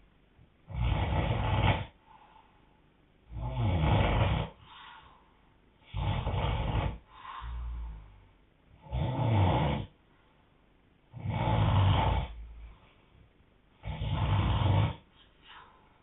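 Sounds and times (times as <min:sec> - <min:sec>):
man snoring: 0:00.6 - 0:02.0, 0:03.3 - 0:04.6, 0:05.8 - 0:08.0, 0:08.7 - 0:09.9, 0:11.1 - 0:12.6, 0:13.8 - 0:15.1
soft breaths: 0:01.1 - 0:03.0, 0:04.0 - 0:08.8, 0:11.7 - 0:16.0.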